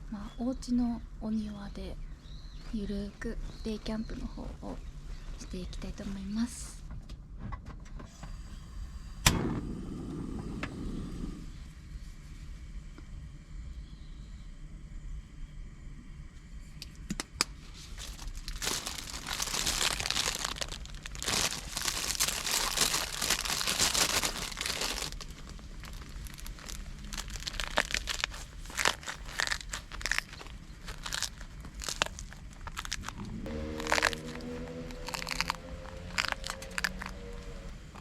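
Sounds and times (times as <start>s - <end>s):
crinkling and rustling: 17.6s - 38.0s.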